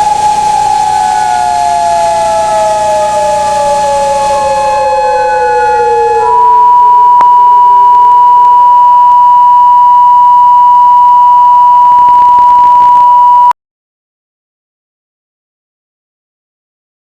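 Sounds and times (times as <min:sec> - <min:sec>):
steady pure test tone beep: 0:05.2 - 0:13.5.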